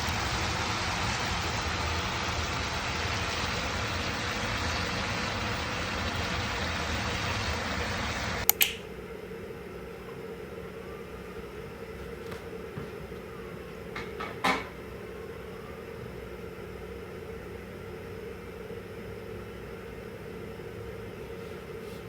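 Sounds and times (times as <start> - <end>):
quiet steady hum: 0.0 - 22.0
sharp clicks: 8.4 - 8.8.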